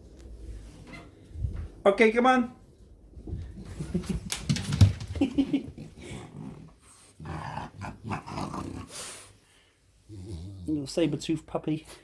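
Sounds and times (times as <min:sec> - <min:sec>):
dog grunting: 0:05.6 - 0:09.1.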